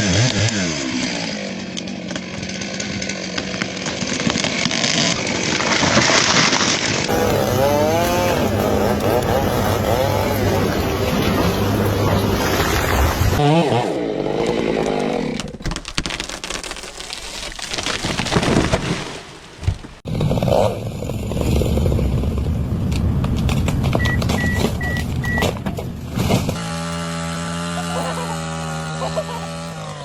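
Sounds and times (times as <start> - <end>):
chainsaw engine running: 0.0 - 5.6, 7.0 - 15.4, 26.5 - 30.0
sharp cracks and crackling: 1.8 - 13.4, 14.8 - 26.7.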